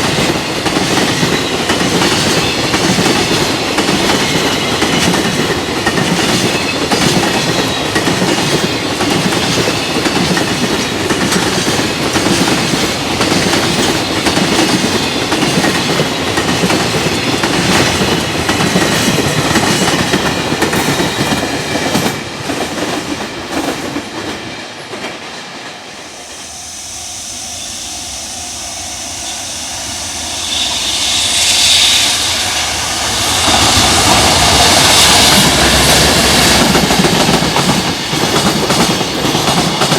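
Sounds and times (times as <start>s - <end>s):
train wheels clacking on rails: 0.0s - 26.6s, 28.0s - 39.9s
high hiss: 26.0s - 37.2s.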